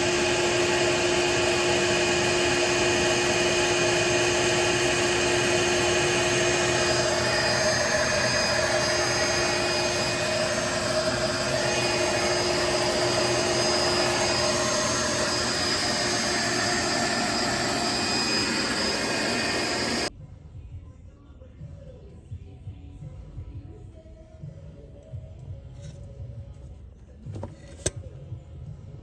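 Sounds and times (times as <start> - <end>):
whirring motor-driven fan: 0.0 - 20.1.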